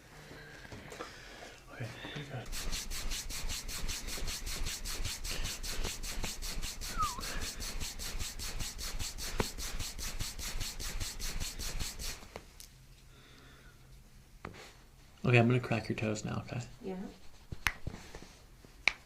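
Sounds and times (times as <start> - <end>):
hands rubbing skin: 2.4 - 12.4, 17.0 - 19.0.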